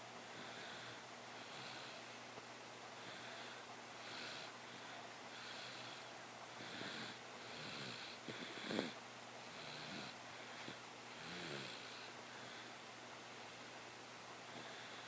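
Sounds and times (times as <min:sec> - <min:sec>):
person snoring: 0:06.6 - 0:10.2.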